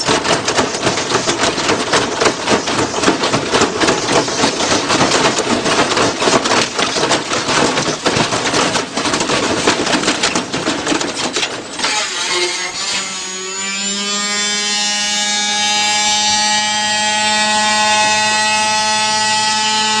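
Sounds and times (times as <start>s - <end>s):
washing machine banging and rattling: 0.0s - 13.0s.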